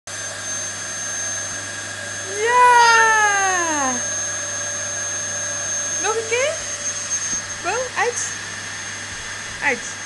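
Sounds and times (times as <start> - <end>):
vacuum cleaner running: 0.1 - 10.0
long cry: 2.3 - 4.1.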